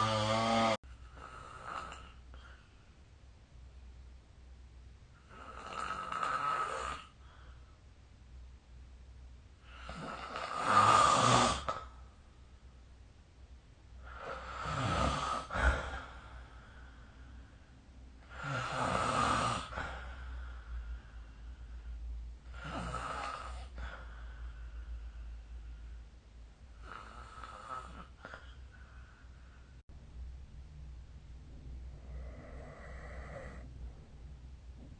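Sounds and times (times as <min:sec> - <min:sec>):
person snoring: 0:00.0 - 0:02.6, 0:05.2 - 0:07.2, 0:09.6 - 0:11.9, 0:14.0 - 0:17.0, 0:18.2 - 0:20.8, 0:22.4 - 0:24.5, 0:26.8 - 0:28.7, 0:32.0 - 0:33.7
steady low hum: 0:11.6 - 0:34.9.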